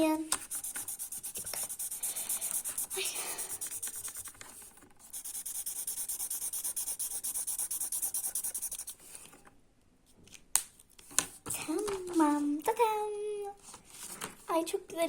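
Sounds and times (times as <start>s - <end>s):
pen scribbling on paper: 0.4s - 9.0s.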